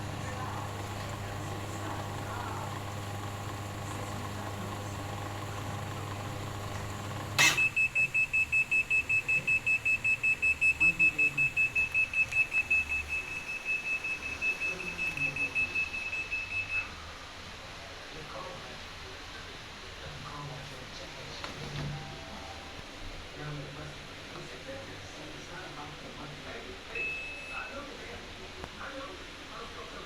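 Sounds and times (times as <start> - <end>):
washing machine humming: 0.0 - 17.2
rapid high-pitched beeping alarm: 7.4 - 16.8.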